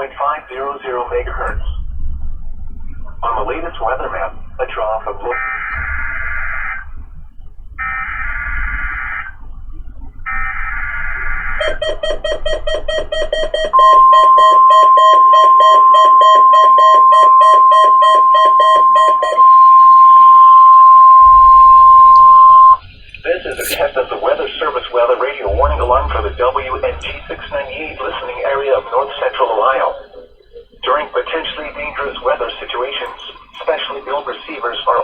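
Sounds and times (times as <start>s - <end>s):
steady warning alarm tone: 7.7s - 9.4s, 10.3s - 22.9s, 25.5s - 28.3s
rapid beeping: 25.5s - 28.5s
shrill warbling data bursts: 25.5s - 28.6s.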